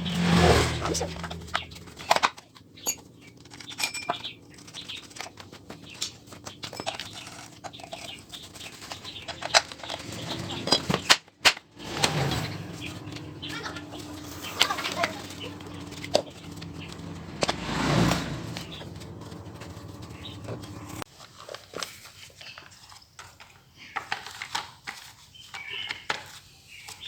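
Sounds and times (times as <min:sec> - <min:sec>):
hand tools clicking and tapping: 0:01.2 - 0:12.3.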